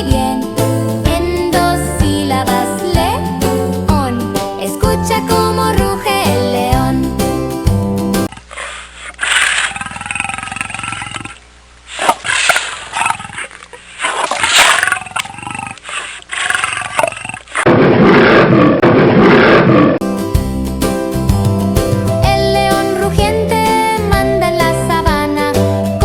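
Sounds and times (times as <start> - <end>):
lion roaring: 9.2 - 20.0.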